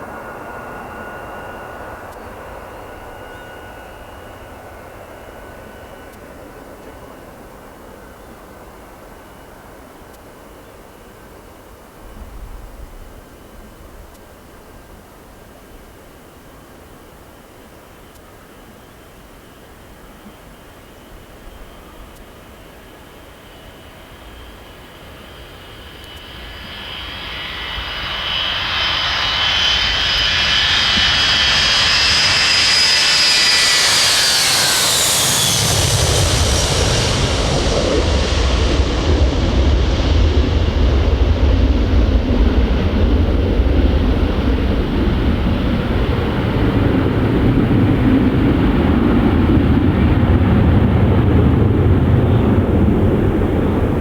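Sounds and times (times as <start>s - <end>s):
jet engine whine passing: 0.0s - 9.7s, 23.1s - 54.0s.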